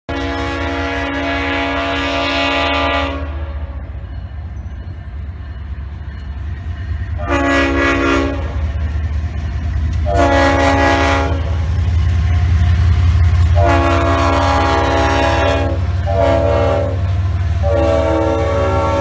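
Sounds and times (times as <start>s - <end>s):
monorail multi-tone horn: 0.1s - 4.0s, 6.8s - 8.8s, 9.9s - 11.9s, 13.2s - 19.0s
train running low rumble: 0.1s - 19.0s.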